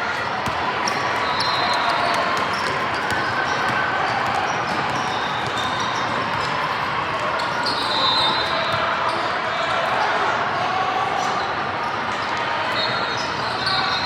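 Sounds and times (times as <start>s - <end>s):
crowd and player noise: 0.0s - 14.0s
basketball bouncing on court: 0.4s - 6.6s.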